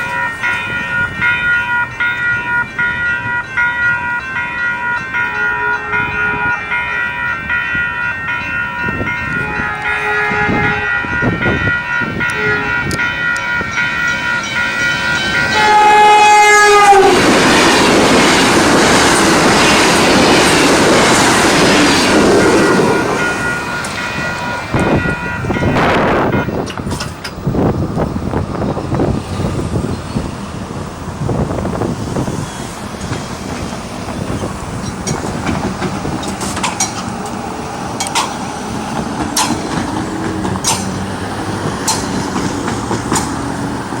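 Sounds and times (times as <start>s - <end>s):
level crossing bells ringing: 0.0s - 16.0s, 22.2s - 26.7s
train wheels on rails: 0.0s - 44.0s
train horn: 5.0s - 7.0s, 9.3s - 13.6s, 15.4s - 17.4s, 22.2s - 26.6s.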